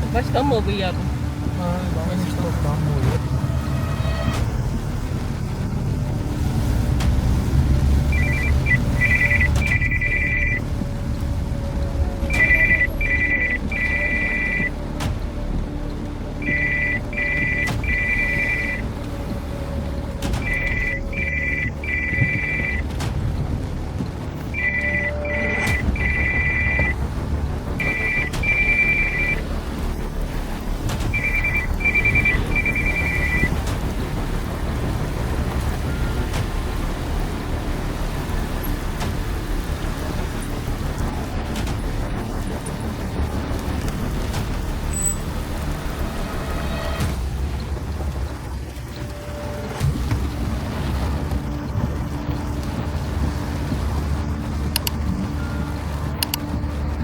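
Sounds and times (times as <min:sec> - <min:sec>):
low rumble of car driving: 0:00.0 - 0:57.0
phone ringtone two-tone beeps: 0:08.1 - 0:10.6, 0:12.3 - 0:14.7, 0:16.4 - 0:18.8, 0:20.4 - 0:22.8, 0:24.6 - 0:26.9, 0:27.8 - 0:29.4, 0:31.2 - 0:33.5.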